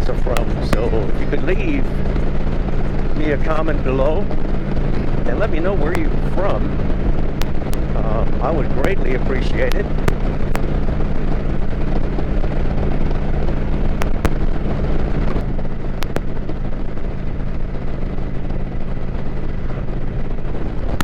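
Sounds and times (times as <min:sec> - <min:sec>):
motorcycle engine running: 0:00.0 - 0:21.0
wind on microphone: 0:00.0 - 0:21.0.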